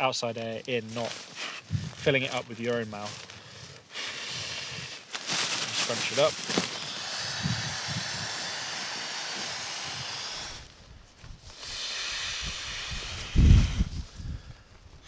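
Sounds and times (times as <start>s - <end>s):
air hissing from pump sack: 1.0s - 1.9s, 3.4s - 10.7s, 11.5s - 14.2s.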